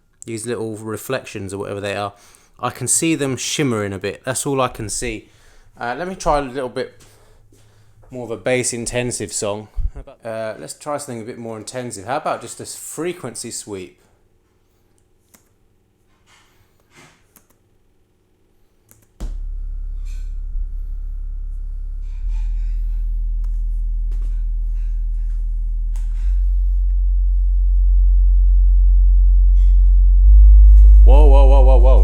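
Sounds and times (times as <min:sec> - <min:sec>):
subwoofer bass tone sweep: 0:19.2 - 0:32.0.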